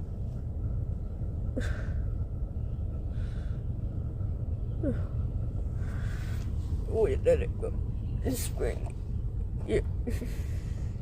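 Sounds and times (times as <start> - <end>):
soft breath: 3.1 - 3.9, 4.8 - 6.9.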